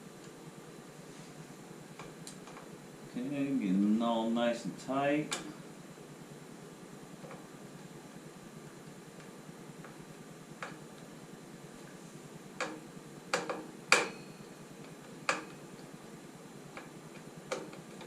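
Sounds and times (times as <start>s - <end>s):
steady low hum: 0.0s - 18.0s
hand tools clicking and knocking: 12.6s - 14.2s.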